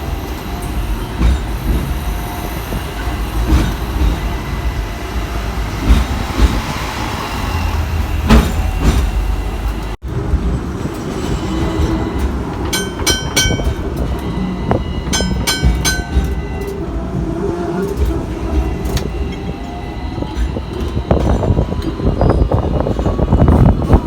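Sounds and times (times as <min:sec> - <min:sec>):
tram rumbling on tracks: 0:00.0 - 0:24.0
tram bell dings: 0:11.0 - 0:23.7.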